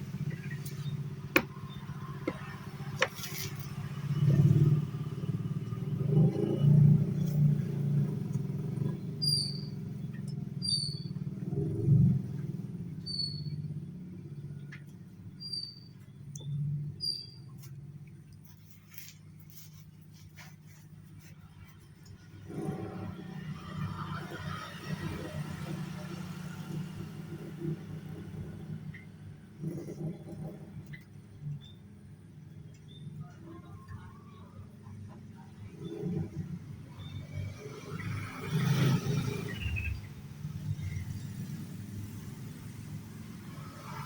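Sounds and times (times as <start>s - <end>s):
passing road vehicles rumble: 0.0s - 15.7s, 19.0s - 44.0s
bird chirping: 8.9s - 11.2s, 15.4s - 17.5s.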